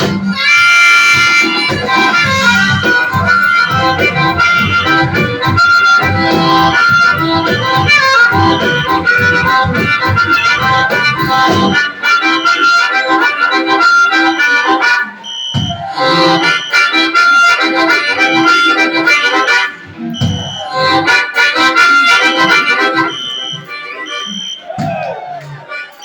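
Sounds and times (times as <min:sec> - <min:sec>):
blues-rock band playing: 0:00.0 - 0:26.0
harmonica: 0:00.0 - 0:26.0
fire alarm tone: 0:14.3 - 0:17.2, 0:22.5 - 0:25.0.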